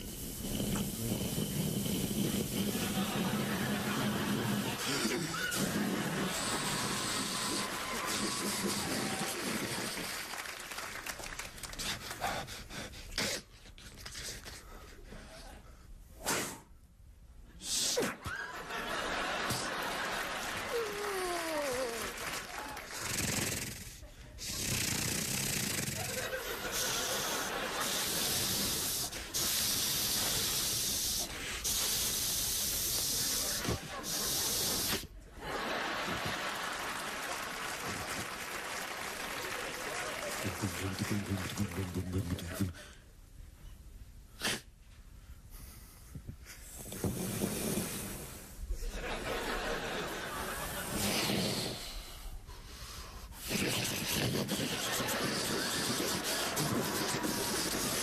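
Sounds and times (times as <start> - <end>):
mouth hissing: 0.0 - 10.2, 20.7 - 22.2, 22.9 - 35.2, 46.5 - 48.6, 50.3 - 58.0
breaths and gasps: 40.5 - 43.1, 50.9 - 54.4.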